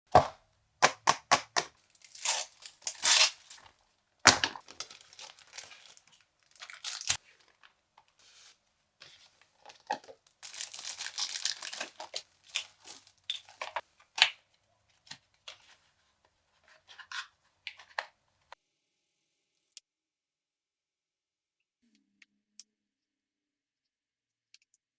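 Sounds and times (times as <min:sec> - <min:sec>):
packaging tearing and rustling: 0:01.9 - 0:03.7, 0:04.3 - 0:07.2, 0:09.6 - 0:13.8.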